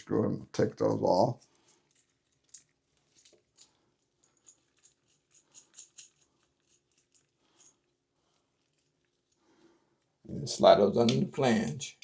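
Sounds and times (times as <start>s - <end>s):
faint small clicks and scrapes: 1.3s - 10.2s.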